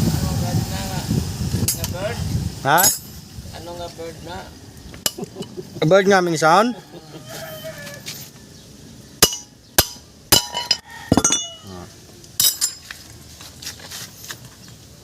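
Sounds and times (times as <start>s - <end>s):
metal tools clinking: 2.8s - 3.2s, 9.2s - 11.7s, 12.4s - 13.0s.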